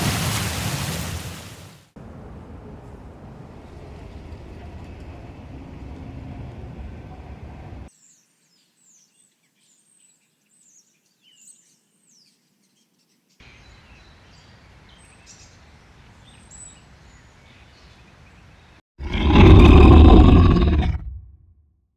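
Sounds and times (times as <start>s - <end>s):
steady low rumble: 2.0s - 7.9s.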